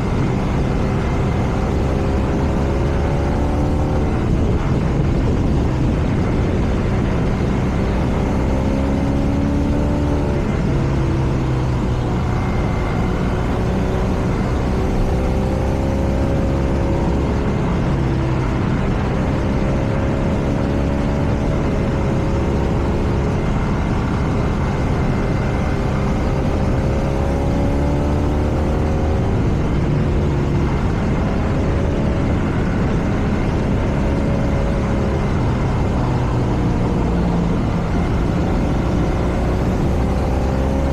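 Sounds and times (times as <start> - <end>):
motorcycle engine running: 0.0 - 40.9
wind and road noise: 0.0 - 40.9.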